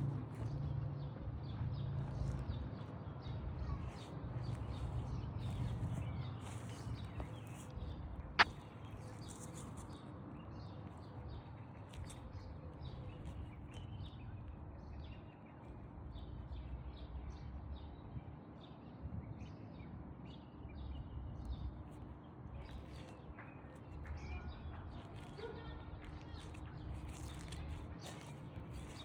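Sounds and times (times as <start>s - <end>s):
small birds chirping: 0.1s - 29.0s
low outdoor rumble: 3.4s - 9.0s.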